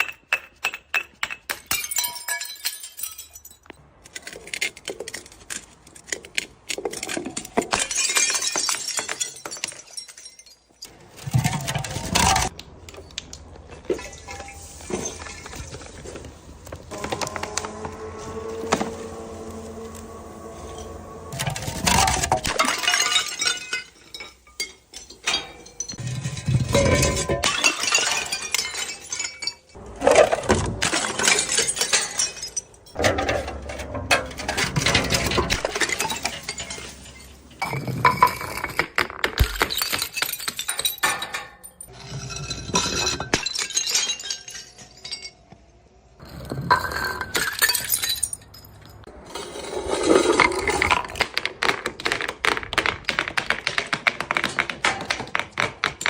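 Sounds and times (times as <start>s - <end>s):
glass bottles smashing: 0.0s - 4.3s, 6.9s - 12.5s, 13.7s - 49.1s
glass shards clinking: 0.0s - 5.2s, 7.0s - 12.5s, 16.9s - 45.6s, 46.4s - 49.1s.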